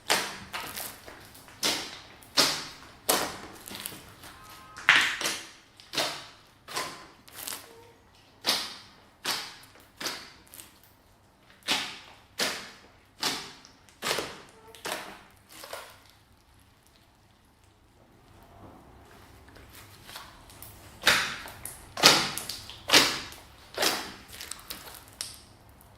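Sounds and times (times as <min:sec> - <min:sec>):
sticky slime pops and squelches: 0:08.4 - 0:10.8, 0:11.6 - 0:15.1.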